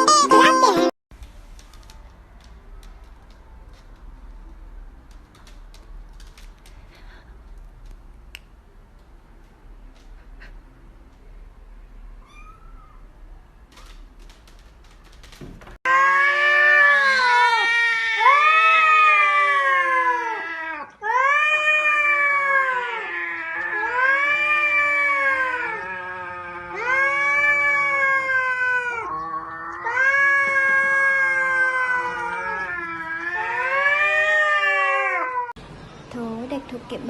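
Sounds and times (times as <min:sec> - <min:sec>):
cat yowling: 0:15.9 - 0:35.6.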